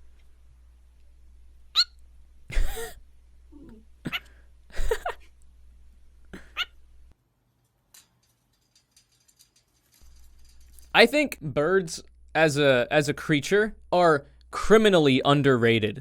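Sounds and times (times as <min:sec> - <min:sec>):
pet bird squawking and chirping: 0:01.8 - 0:02.0.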